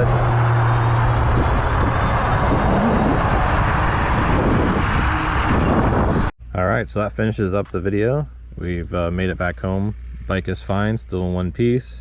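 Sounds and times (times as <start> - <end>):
wind rushing over microphone: 0.0 - 6.3
steady low hum: 6.0 - 12.0.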